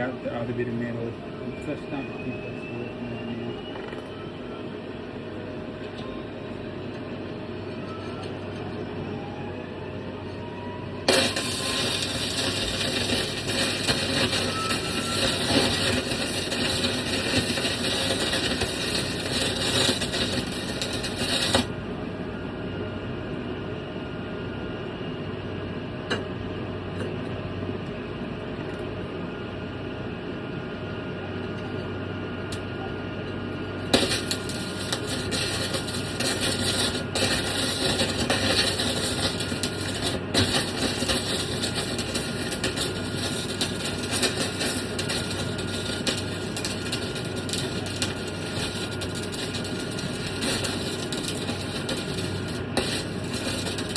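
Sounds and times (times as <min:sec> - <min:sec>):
welding arc crackling: 0:11.0 - 0:21.8, 0:33.8 - 0:53.9
dull steady hum: 0:33.6 - 0:53.9.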